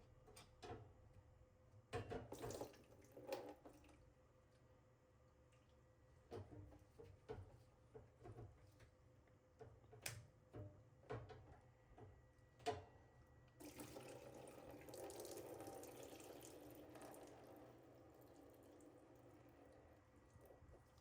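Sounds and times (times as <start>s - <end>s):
water running into a bucket: 13.6s - 21.0s.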